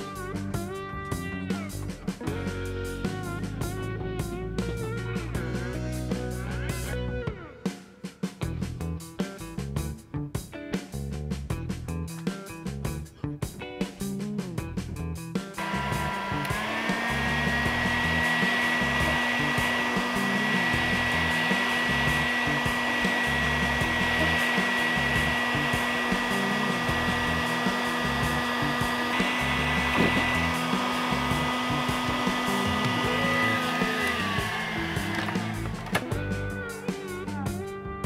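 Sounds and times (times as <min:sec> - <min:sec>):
heat gun blowing air: 0:15.6 - 0:36.2.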